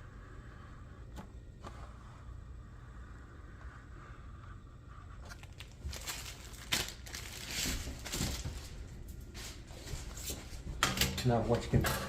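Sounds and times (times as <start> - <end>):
packaging crinkling and rustling: 5.2 - 10.4.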